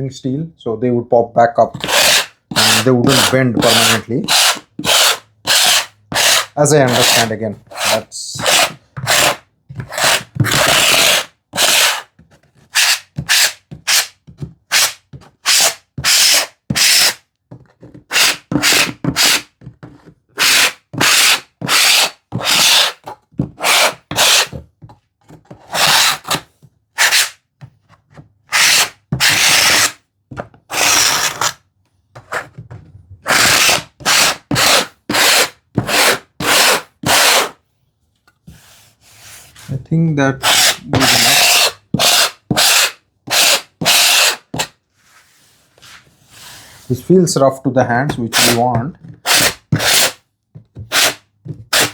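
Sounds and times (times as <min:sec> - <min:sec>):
handsaw scraping wood: 0:01.8 - 0:17.2, 0:18.1 - 0:19.5, 0:20.4 - 0:24.6, 0:25.6 - 0:27.4, 0:28.5 - 0:30.0, 0:30.7 - 0:31.6, 0:33.2 - 0:37.6, 0:40.4 - 0:44.7, 0:48.2 - 0:50.2, 0:50.8 - 0:51.9.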